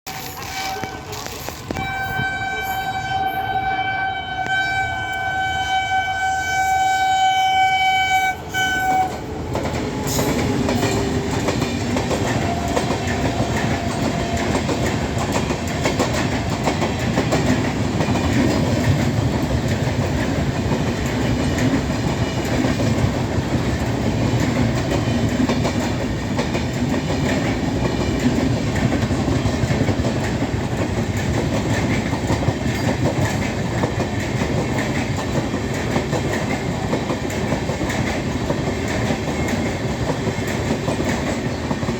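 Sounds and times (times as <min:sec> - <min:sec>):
locomotive horn blast: 0:00.1 - 0:09.3
train wheels rumbling on rails: 0:00.1 - 0:41.9.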